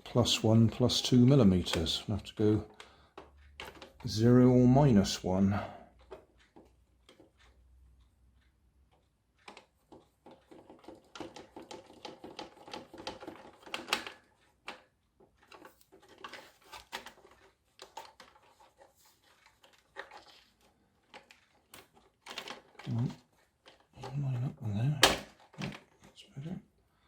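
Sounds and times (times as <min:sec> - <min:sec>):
plastic parts clicking and tapping: 0:00.0 - 0:07.6, 0:08.9 - 0:26.2.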